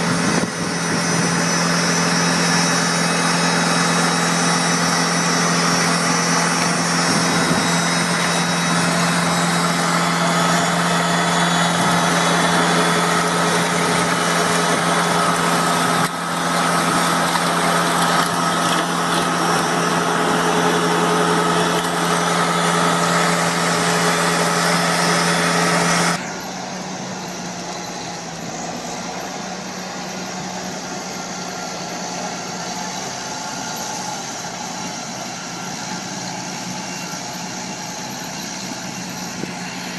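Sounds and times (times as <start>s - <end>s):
farm machinery engine humming: 0.0s - 39.9s.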